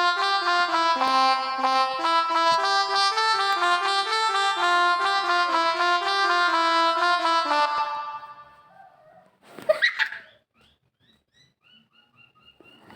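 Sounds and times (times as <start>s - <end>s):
reedy melodica melody: 0.0s - 8.7s.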